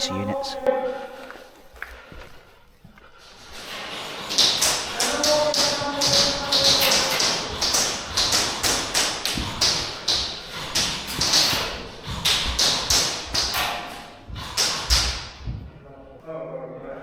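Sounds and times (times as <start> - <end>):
heavy thuds: 3.4 - 15.9
airsoft guns firing: 4.3 - 15.4.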